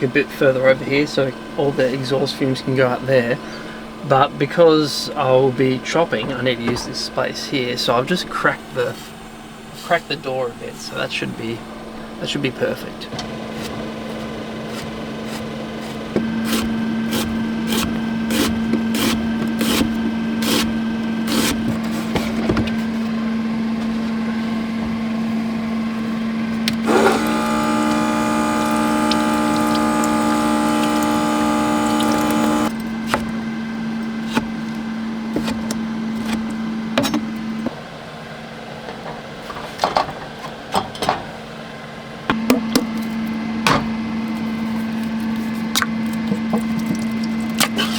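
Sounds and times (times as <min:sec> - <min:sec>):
steady low hum: 0:22.3 - 0:37.6.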